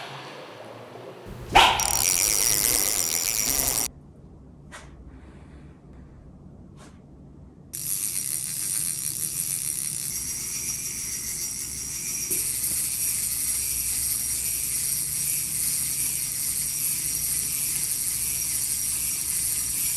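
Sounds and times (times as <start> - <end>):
fishing reel ratchet buzzing: 1.3 - 3.9, 7.8 - 19.9.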